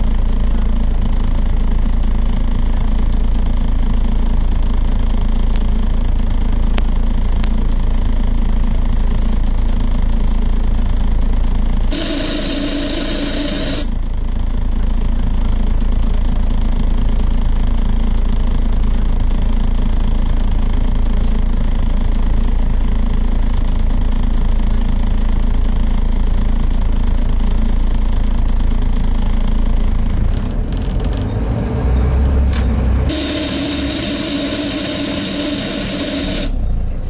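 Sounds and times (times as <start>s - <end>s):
bus engine rumble: 0.0s - 37.0s
loud air hiss: 11.9s - 13.9s, 33.1s - 36.6s.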